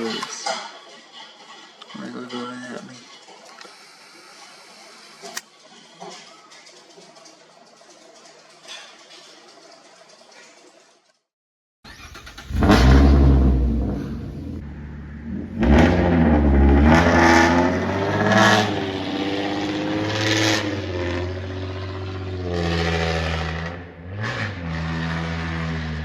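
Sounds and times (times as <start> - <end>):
engine revving: 11.9 - 26.0.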